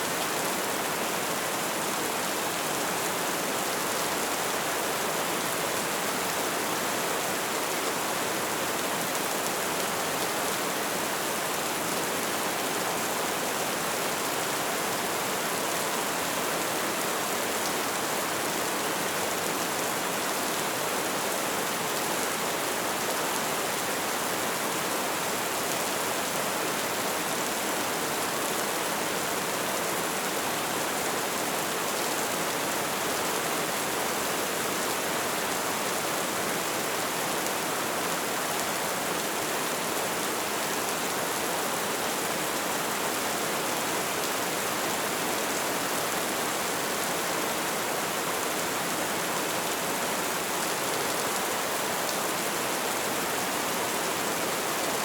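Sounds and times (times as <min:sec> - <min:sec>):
light rain falling: 0:00.0 - 0:55.0.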